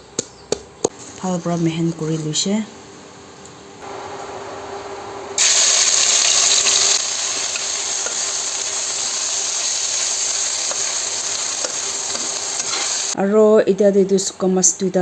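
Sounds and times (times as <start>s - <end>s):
garlic sizzling in hot oil: 3.9s - 13.2s.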